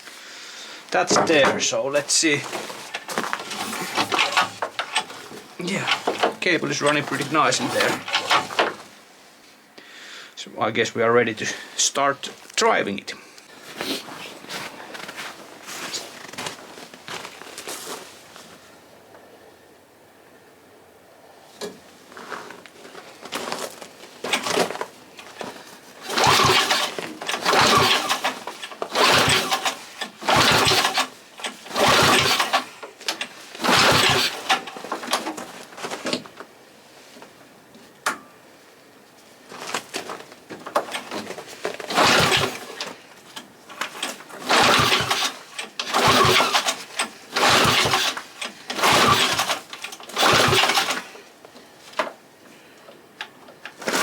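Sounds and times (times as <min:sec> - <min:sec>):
engine being pull-started: 0:01.0 - 0:08.9, 0:24.2 - 0:36.3, 0:40.0 - 0:51.2, 0:53.7 - 0:54.0.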